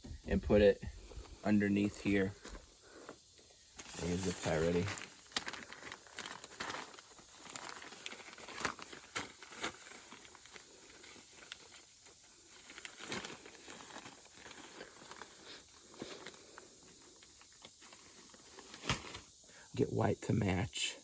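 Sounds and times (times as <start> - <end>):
cord and zip ties rustling: 3.8 - 19.4.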